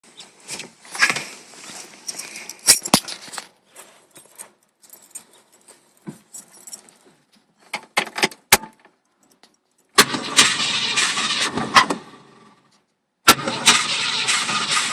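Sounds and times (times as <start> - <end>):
car engine cranking: 9.9 - 12.5, 13.3 - 14.9.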